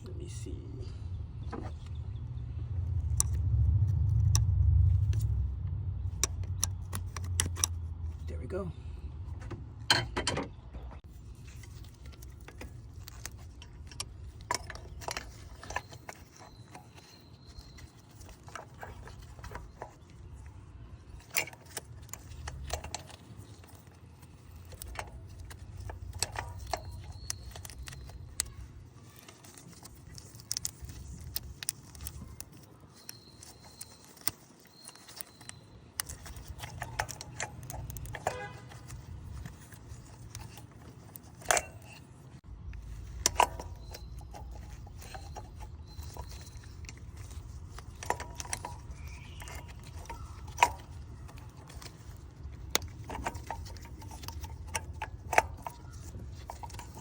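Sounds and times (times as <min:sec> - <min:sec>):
low rumble: 0:00.0 - 0:09.9
metal tools clinking: 0:11.4 - 0:57.0.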